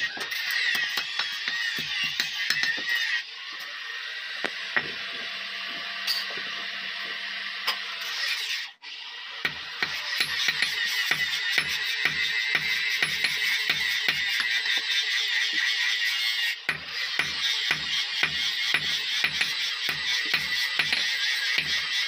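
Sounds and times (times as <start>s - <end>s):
hand tools clicking on metal: 9.8s - 15.6s, 16.7s - 22.0s.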